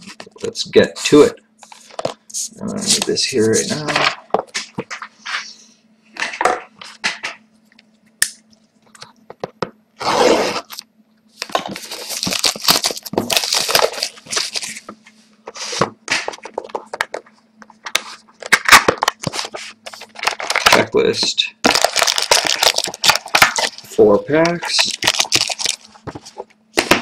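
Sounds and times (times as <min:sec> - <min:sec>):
faint steady hum: 0:00.0 - 0:27.0
shrink-wrap crinkling and tearing: 0:11.5 - 0:14.8, 0:18.5 - 0:20.9, 0:21.6 - 0:24.0, 0:24.6 - 0:26.0.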